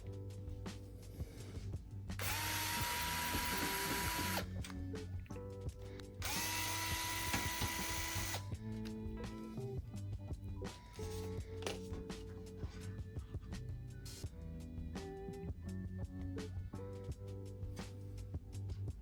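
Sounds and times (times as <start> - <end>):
electric screwdriver whining: 2.2 - 4.7, 6.2 - 8.5.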